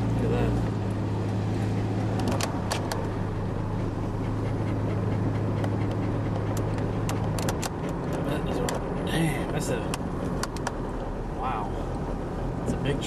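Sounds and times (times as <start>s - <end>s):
road and engine drone: 0.0s - 13.0s
dog panting: 1.6s - 11.2s.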